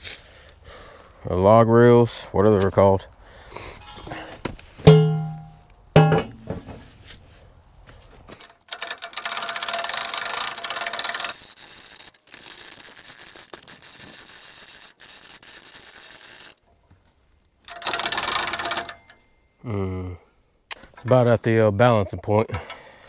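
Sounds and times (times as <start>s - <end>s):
winch ratcheting clatter: 8.4s - 16.6s, 17.6s - 19.2s.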